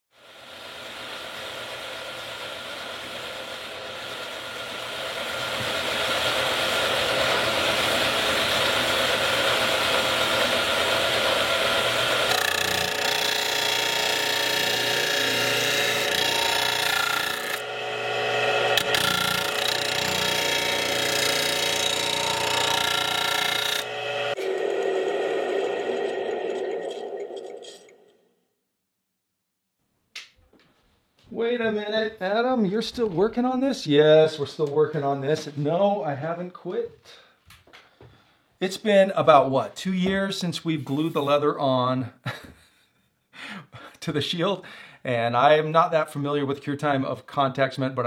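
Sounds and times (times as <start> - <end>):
power tool whining: 2.0 - 27.2.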